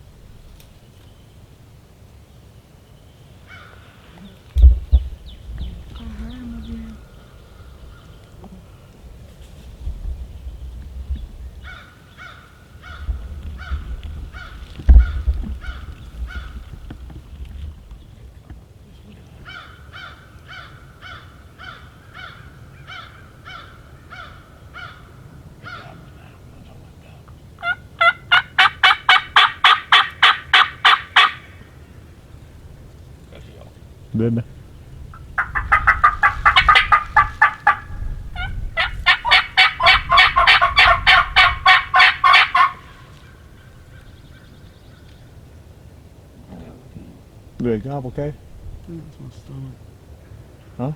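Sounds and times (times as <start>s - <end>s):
turkey yelping: 11.6s - 16.7s, 27.6s - 31.7s, 35.1s - 44.5s.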